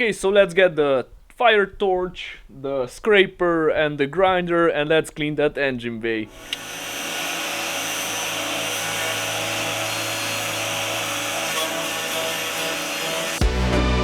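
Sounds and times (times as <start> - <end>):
angle grinder humming: 6.3 - 13.8.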